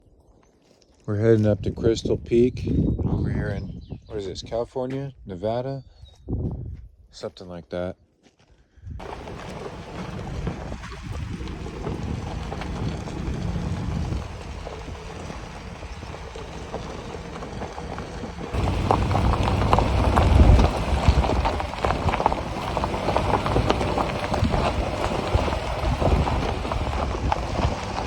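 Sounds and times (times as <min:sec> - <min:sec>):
tires rolling over gravel: 0:09.0 - 0:28.0
vehicle rumble: 0:09.0 - 0:28.0.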